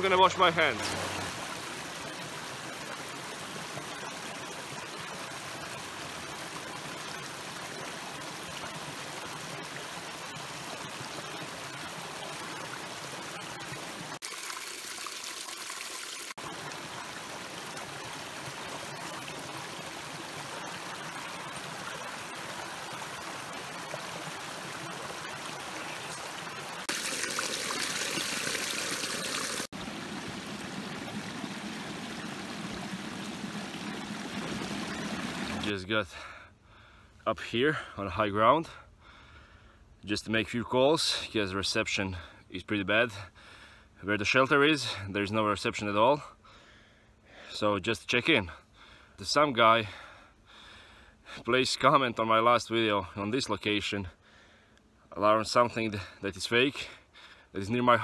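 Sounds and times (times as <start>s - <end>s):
bright rush of water: 0.0s - 35.8s
small stream flowing: 0.0s - 36.3s.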